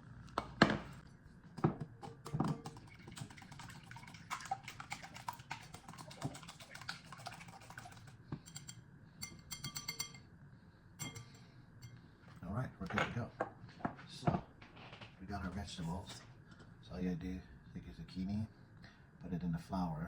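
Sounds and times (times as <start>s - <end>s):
eggs beaten in a bowl: 1.4s - 10.2s.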